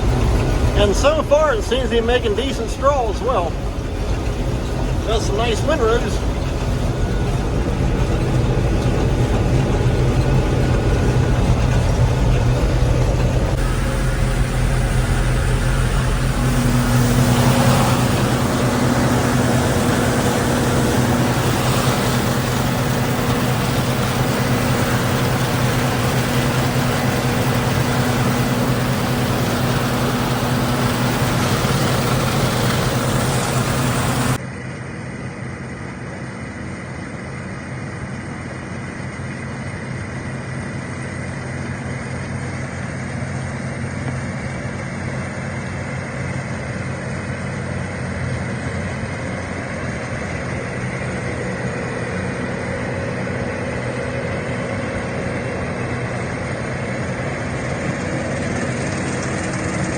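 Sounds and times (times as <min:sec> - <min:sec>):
combine harvester machinery humming: 0:00.0 - 0:59.9.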